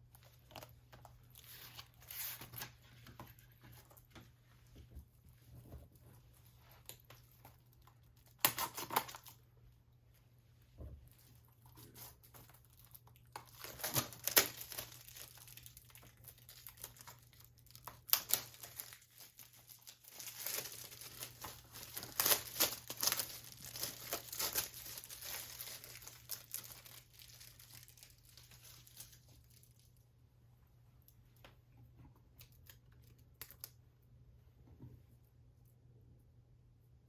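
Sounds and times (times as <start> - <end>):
plastic wrap crackling and ripping: 6.8 - 9.4, 11.2 - 30.0.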